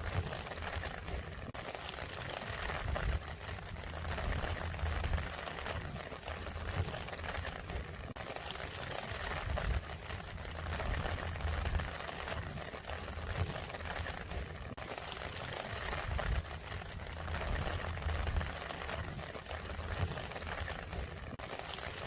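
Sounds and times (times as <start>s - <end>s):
rain pattering: 0.0s - 22.0s
low rumble: 2.9s - 8.1s, 9.4s - 14.8s, 16.0s - 21.3s.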